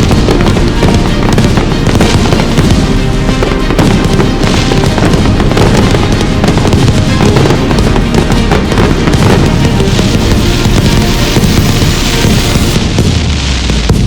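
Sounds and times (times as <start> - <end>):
fireworks bangs and crackles: 0.0 - 14.0
loud music: 0.0 - 14.0.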